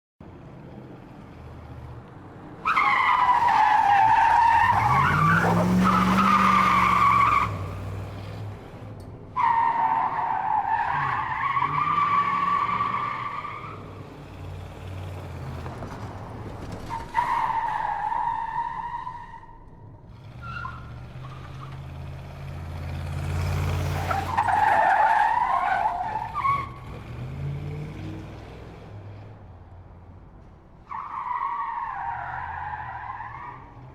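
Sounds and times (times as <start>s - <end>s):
car engine revving: 4.0s - 8.6s, 20.1s - 24.7s.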